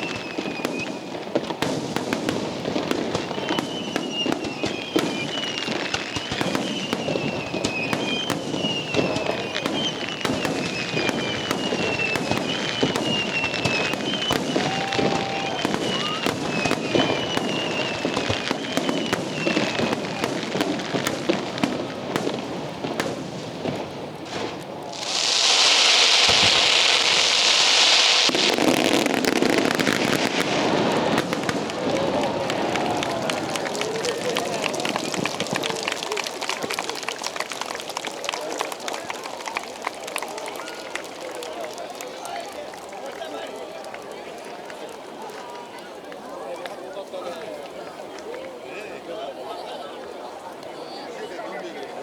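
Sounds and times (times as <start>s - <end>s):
fireworks crackling bangs: 0.0s - 45.8s
falling whistle: 3.2s - 19.8s
loud hiss: 24.3s - 28.6s.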